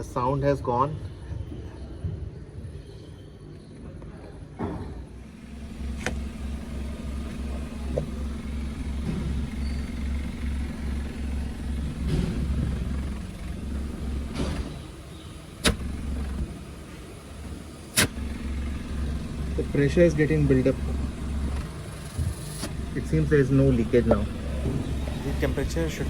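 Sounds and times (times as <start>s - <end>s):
car engine idling: 5.2s - 26.0s
sharp clicks: 5.9s - 14.8s, 15.6s - 16.6s, 17.9s - 19.2s.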